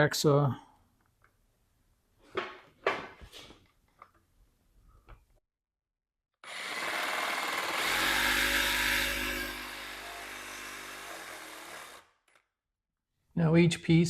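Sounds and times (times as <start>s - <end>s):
power hacksaw cutting metal: 6.4s - 12.1s.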